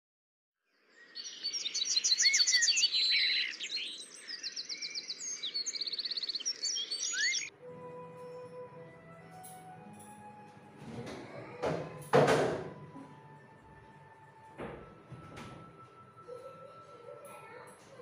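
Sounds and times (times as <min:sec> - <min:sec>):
birds singing and chirping: 0:00.9 - 0:07.5
faint music with held notes: 0:07.4 - 0:18.0.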